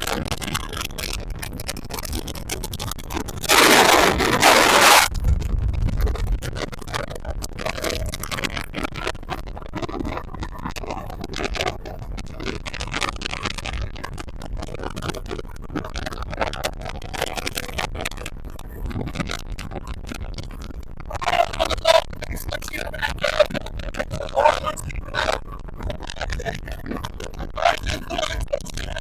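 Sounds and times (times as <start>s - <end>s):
rushing wind: 0.0s - 13.2s.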